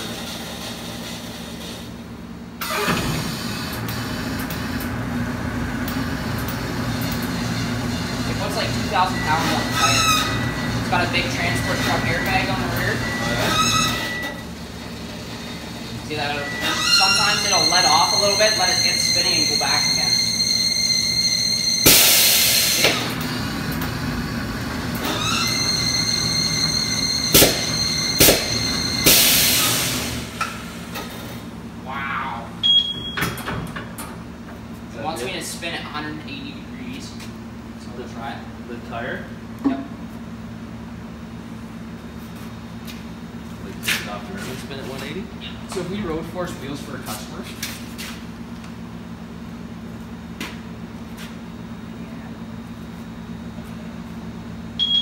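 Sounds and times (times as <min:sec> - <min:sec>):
wheel balancer spinning tire: 0:00.0 - 0:31.6
machine high whine: 0:05.9 - 0:31.2
air hissing: 0:21.8 - 0:23.2, 0:27.3 - 0:30.9
steady hum with hiss: 0:27.4 - 0:55.0.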